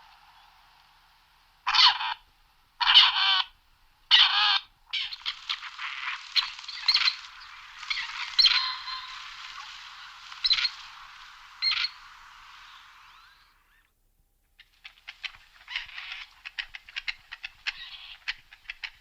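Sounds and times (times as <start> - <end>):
partridge harsh rasping calls: 1.7 - 2.2, 2.8 - 13.9, 14.6 - 19.0
partridge scratchy chattering: 5.0 - 13.8.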